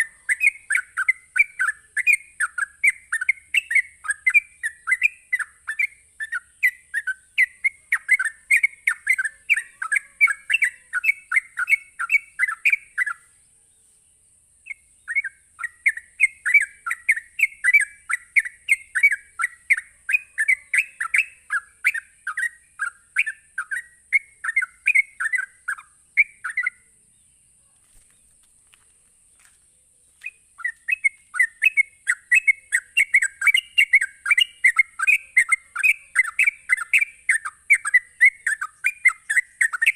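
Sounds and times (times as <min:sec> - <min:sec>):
bulbul chattering song: 0:00.0 - 0:13.5, 0:14.6 - 0:27.6, 0:29.8 - 0:39.9
faint high hiss: 0:05.4 - 0:17.7.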